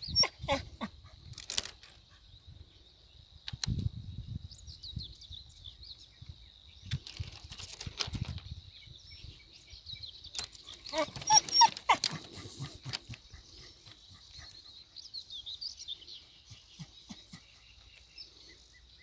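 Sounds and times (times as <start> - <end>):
whining animal calls: 0.0 - 1.0, 10.7 - 14.6, 16.5 - 17.7
small bird chirps: 4.3 - 19.0.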